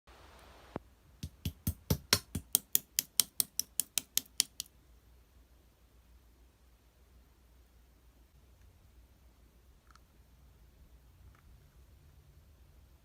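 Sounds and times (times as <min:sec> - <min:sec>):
rapid sharp taps: 0:01.2 - 0:04.7.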